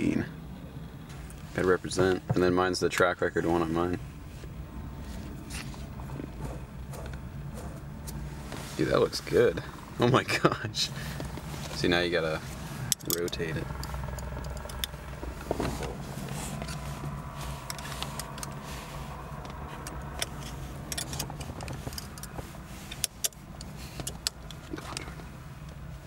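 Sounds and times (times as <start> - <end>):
steady low hum: 0.0 - 26.0
small metallic clicks and rattles: 12.9 - 15.0, 19.4 - 25.2.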